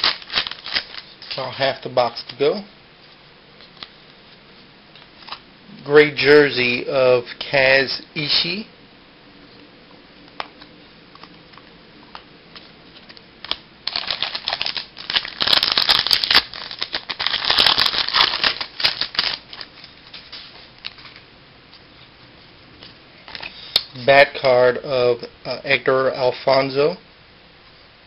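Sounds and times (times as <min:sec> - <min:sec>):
packaging rustling: 0:00.0 - 0:01.4, 0:13.0 - 0:21.2.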